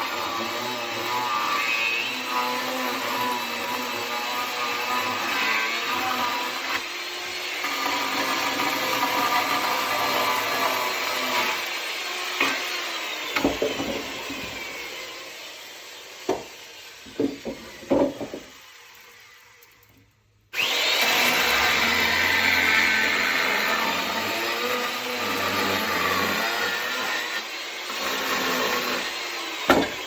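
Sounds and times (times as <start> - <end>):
electric chainsaw cutting wood: 0.0 - 30.0
sharp wooden knocks: 13.4 - 14.7, 16.3 - 16.5, 17.1 - 18.5, 29.7 - 30.0.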